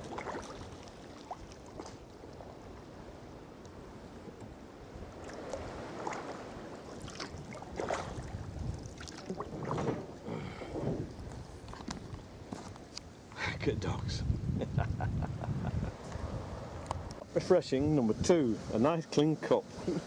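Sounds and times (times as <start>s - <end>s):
paddle strokes splashing water: 0.0s - 12.5s
wind on microphone: 0.0s - 12.8s, 13.4s - 18.8s.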